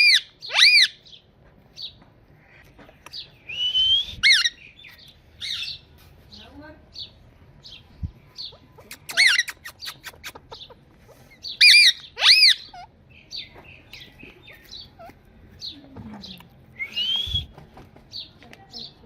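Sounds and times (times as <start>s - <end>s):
parrot squawking: 0.0s - 1.1s, 4.2s - 4.7s, 8.4s - 13.4s.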